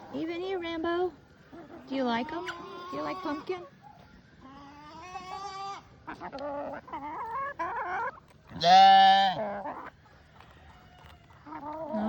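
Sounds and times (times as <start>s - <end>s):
chickens clucking: 0.0s - 12.0s
goats bleating: 8.6s - 9.5s.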